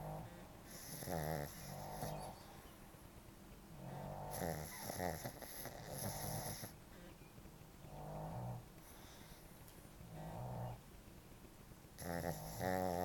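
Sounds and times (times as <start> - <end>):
dog snoring: 0.0 - 2.8, 3.7 - 7.2, 7.8 - 10.9, 11.9 - 13.0.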